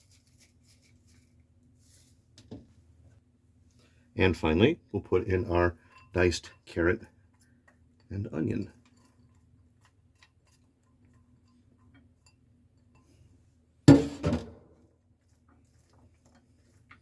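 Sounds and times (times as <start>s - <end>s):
kitchenware clattering knocks: 13.9s - 14.6s.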